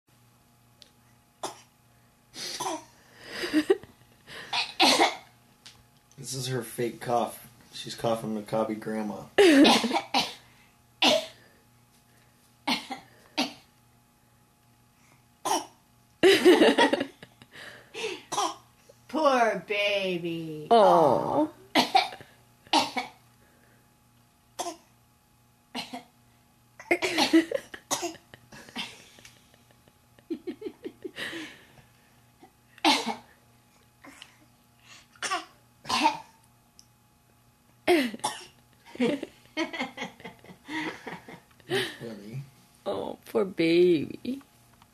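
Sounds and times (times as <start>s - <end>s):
child fake coughing: 2.6s - 2.9s, 4.5s - 5.2s, 9.5s - 10.4s, 18.3s - 18.7s, 21.8s - 23.2s, 26.8s - 28.2s, 35.2s - 36.3s.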